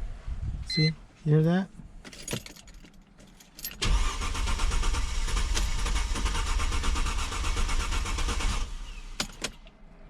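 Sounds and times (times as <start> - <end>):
car starter cranking: 2.1 - 9.8.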